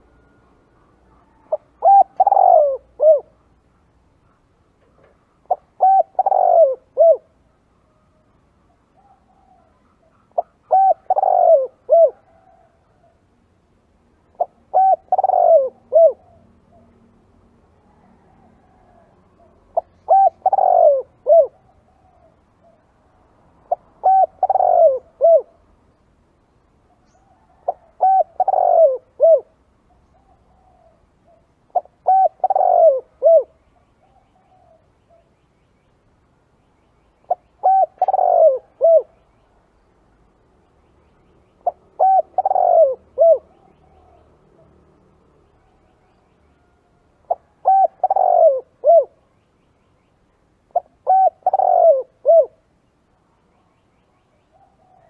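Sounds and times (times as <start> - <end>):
dove cooing: 0.0 - 7.4, 8.9 - 13.2, 14.2 - 17.0, 17.9 - 22.9, 23.6 - 25.6, 26.9 - 35.3, 37.3 - 39.2, 41.6 - 44.8, 46.6 - 49.2, 50.7 - 52.7, 54.5 - 55.0.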